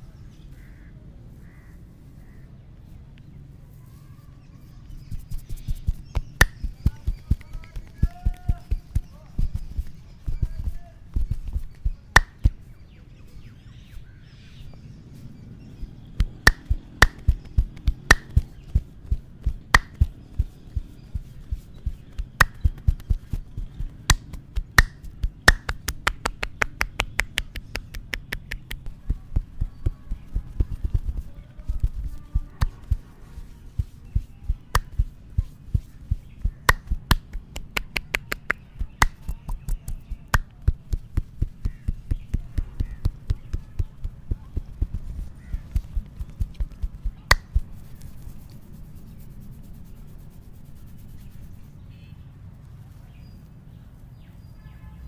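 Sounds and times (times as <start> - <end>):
hands slapping and chopping: 5.0 - 12.6, 16.2 - 48.1
finger snaps: 6.1 - 8.0, 11.7 - 12.6, 16.2 - 18.6, 19.7 - 20.1, 22.1 - 23.4, 24.0 - 28.9, 34.7 - 35.1, 36.6 - 42.4, 47.3 - 47.6.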